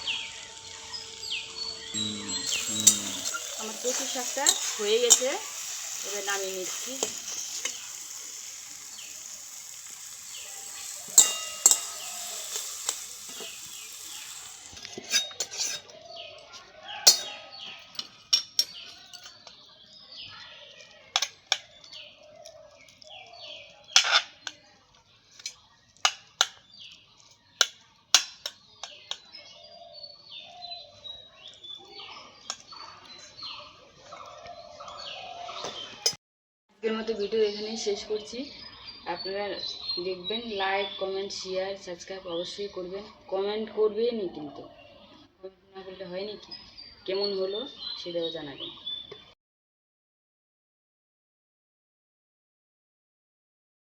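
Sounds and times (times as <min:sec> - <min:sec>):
curry sizzling in a pan: 0:00.0 - 0:16.3, 0:18.1 - 0:29.3
birds chirping: 0:00.0 - 0:26.0, 0:28.6 - 0:36.2
metal spoon knocking against pot: 0:11.0 - 0:13.5.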